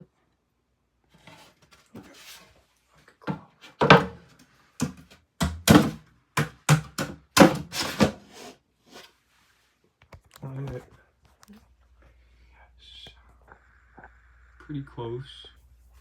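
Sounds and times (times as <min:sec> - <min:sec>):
wooden trim knocks and thuds: 0:03.8 - 0:04.2, 0:04.8 - 0:08.2.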